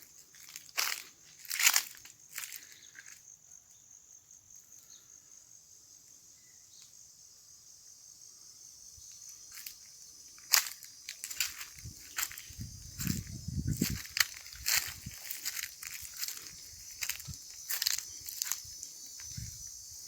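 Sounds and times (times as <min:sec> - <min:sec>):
crunching footsteps: 0:00.0 - 0:03.2, 0:09.1 - 0:19.7
insects chirring: 0:00.0 - 0:20.0.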